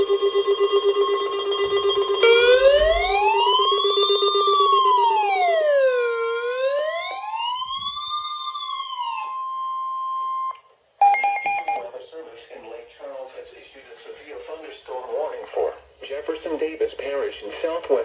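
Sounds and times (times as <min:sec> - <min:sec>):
steady high warning tone: 0:00.0 - 0:05.3, 0:11.0 - 0:11.9
wailing siren: 0:00.0 - 0:10.5
low buzzing tone: 0:01.6 - 0:03.6
stepped electronic beeps: 0:02.2 - 0:03.7, 0:11.0 - 0:11.8.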